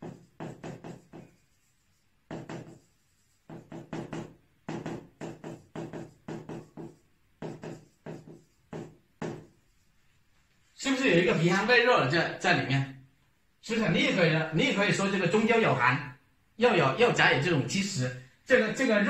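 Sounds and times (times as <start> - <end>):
taps or knocks: 2.3 - 2.8, 3.5 - 9.5.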